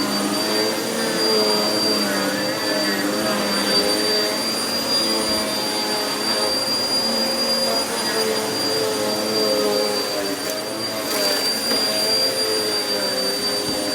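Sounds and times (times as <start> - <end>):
vacuum cleaner running on carpet: 0.0 - 13.9.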